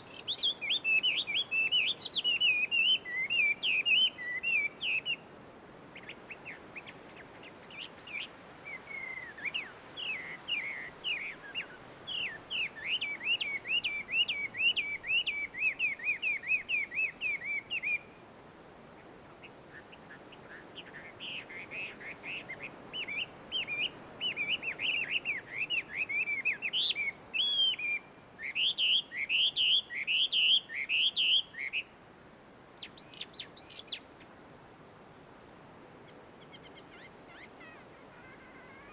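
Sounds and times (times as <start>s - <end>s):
bird singing whistled notes: 0.0s - 5.3s, 6.0s - 18.2s, 20.5s - 34.1s.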